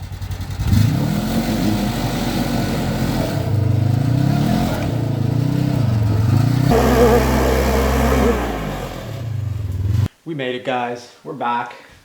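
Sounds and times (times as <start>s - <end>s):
utility vehicle engine revving: 0.2s - 10.1s.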